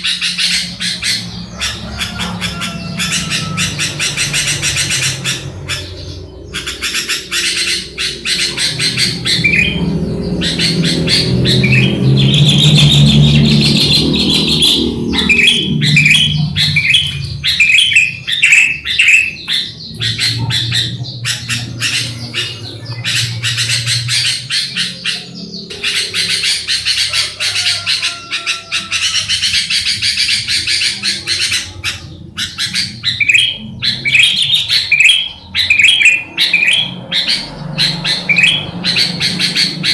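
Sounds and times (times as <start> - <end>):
low hum: 0.0 - 27.4
birds chirping and calling: 0.0 - 39.9.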